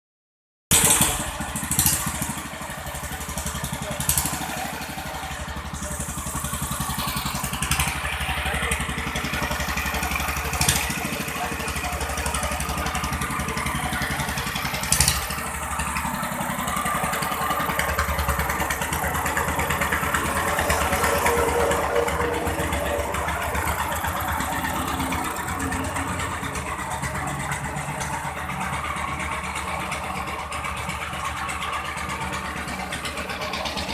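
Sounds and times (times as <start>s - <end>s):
engine running steadily: 0.7s - 33.9s.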